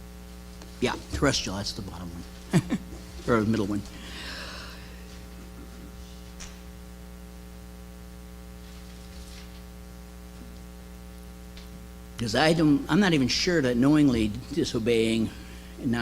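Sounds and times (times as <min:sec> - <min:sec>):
electrical mains hum: 0:00.0 - 0:16.0
faint room hiss: 0:00.0 - 0:16.0.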